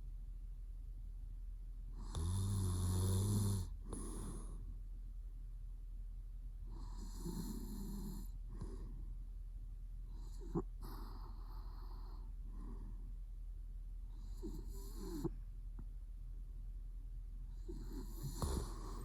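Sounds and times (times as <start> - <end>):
man snoring: 2.0 - 4.6, 6.8 - 8.4, 17.6 - 19.0.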